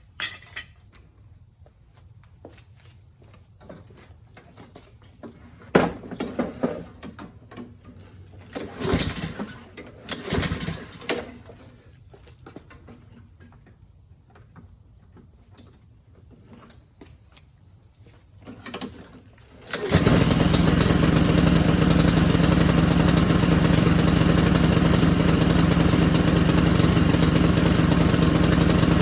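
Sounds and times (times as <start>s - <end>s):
metal parts clinking: 0.0s - 1.1s
metal parts rattling: 0.1s - 1.0s.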